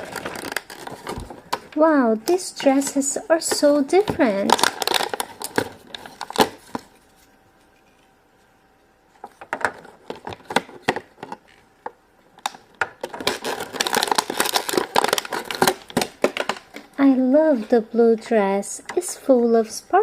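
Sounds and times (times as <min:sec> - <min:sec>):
plastic packaging crinkling: 0:00.0 - 0:01.8, 0:02.8 - 0:07.3, 0:09.2 - 0:11.6, 0:12.3 - 0:17.0.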